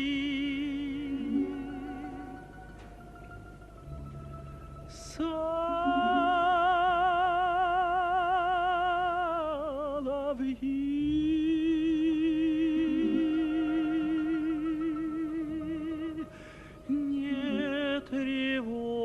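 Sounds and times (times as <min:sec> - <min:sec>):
tenor voice singing wordlessly: 0:00.0 - 0:02.7, 0:04.9 - 0:19.0
quiet choral accompaniment: 0:00.0 - 0:19.0.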